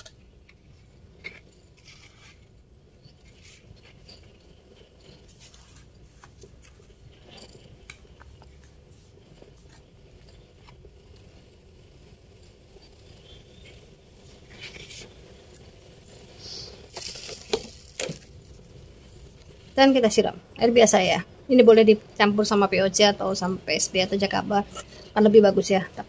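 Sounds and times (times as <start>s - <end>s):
soil sprinkled into a pot: 0.7s - 20.2s.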